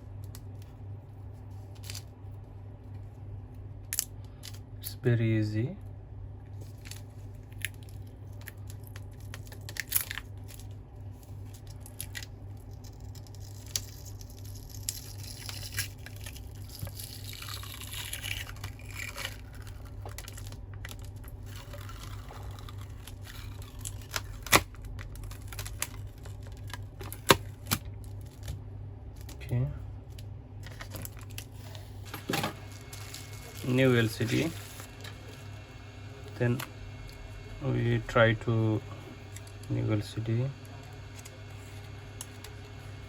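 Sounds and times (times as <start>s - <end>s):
steady low hum: 0.0s - 43.0s
adhesive tearing: 11.6s - 27.8s.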